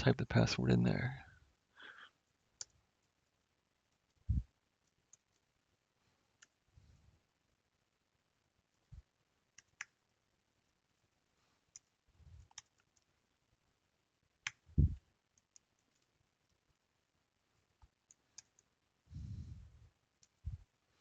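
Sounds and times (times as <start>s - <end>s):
keyboard keys clicking: 11.7s - 13.1s.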